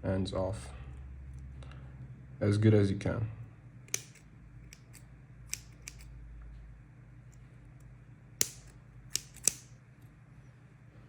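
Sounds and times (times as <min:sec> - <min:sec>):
small cutters snipping metal: 0:03.9 - 0:06.1, 0:08.4 - 0:09.7.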